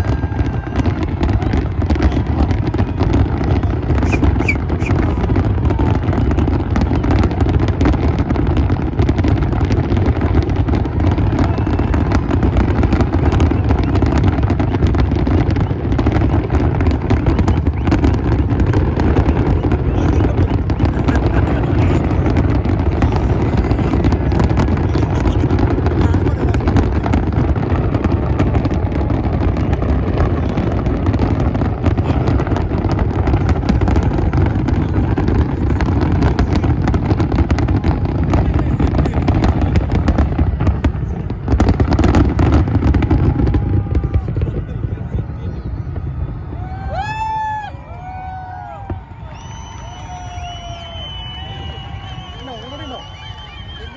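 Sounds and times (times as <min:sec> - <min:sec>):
fireworks booming and crackling: 0:00.0 - 0:53.9
heavy low rumble: 0:16.7 - 0:41.9.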